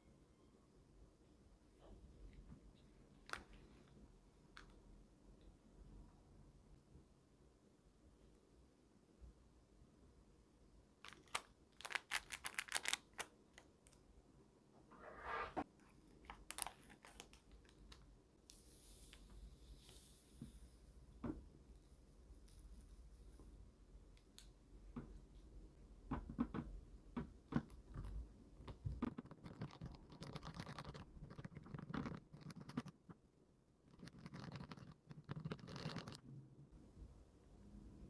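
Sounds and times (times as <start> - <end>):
small plastic pieces scratching: 29.0 - 33.2, 33.9 - 36.2.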